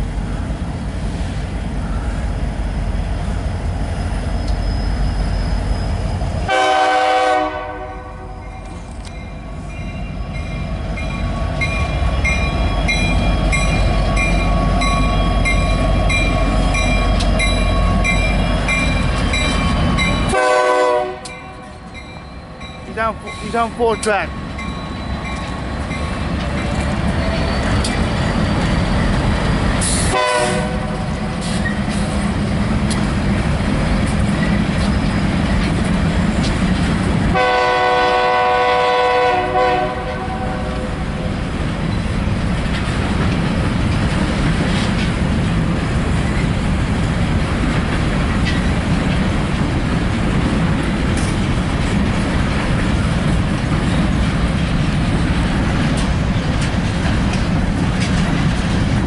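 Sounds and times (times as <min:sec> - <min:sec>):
train wheels rumbling on rail: 0:00.0 - 0:59.0
locomotive horn blasts: 0:06.5 - 0:08.4, 0:20.3 - 0:21.6, 0:30.1 - 0:31.0, 0:37.3 - 0:40.8.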